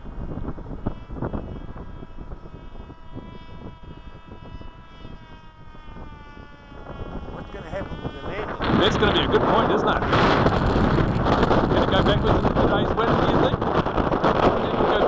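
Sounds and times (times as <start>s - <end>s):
model plane motor whining: 0.0s - 15.0s
wind buffeting microphone: 0.0s - 15.0s.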